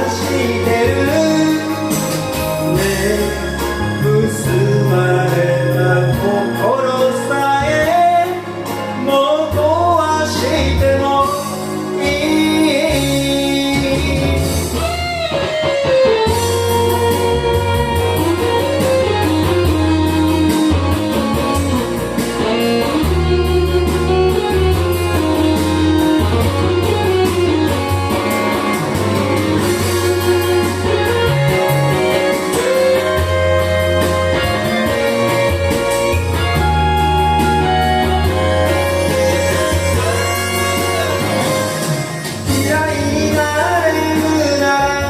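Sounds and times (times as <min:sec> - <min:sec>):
bass guitar: 0:00.0 - 0:45.0
lead guitar melody: 0:00.0 - 0:45.0
steady drum beat: 0:16.2 - 0:44.6.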